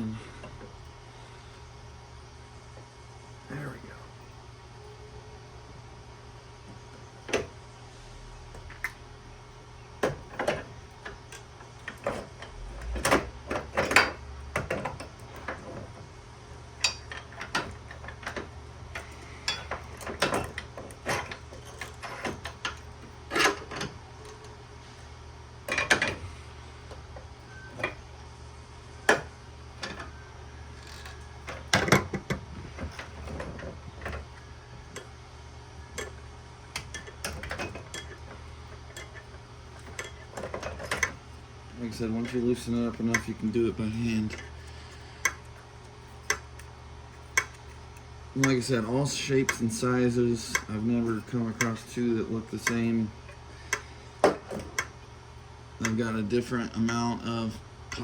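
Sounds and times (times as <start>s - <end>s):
low steady hum: 0.0s - 58.0s.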